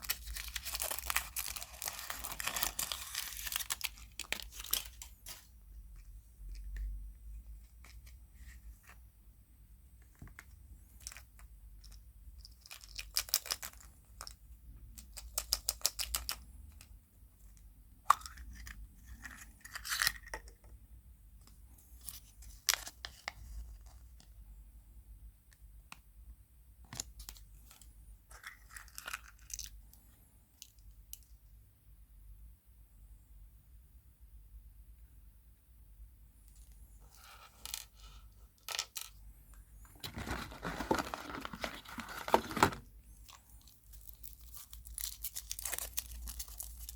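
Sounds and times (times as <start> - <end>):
wrappers tearing and crinkling: 0.0 - 5.4, 43.3 - 46.9.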